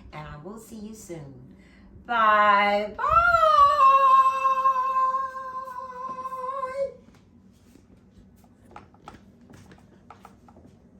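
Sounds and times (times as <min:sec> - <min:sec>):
woman singing a long high note: 0:02.1 - 0:07.0.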